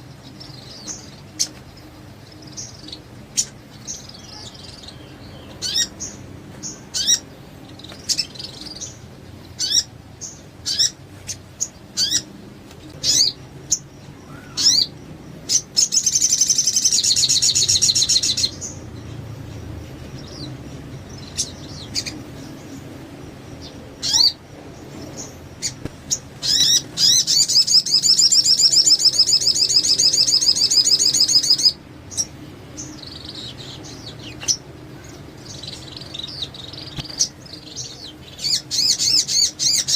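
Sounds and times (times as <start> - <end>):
bird chirping: 0.0 - 39.9
bird trilling rapidly: 13.0 - 18.8, 24.0 - 24.4, 25.1 - 32.3.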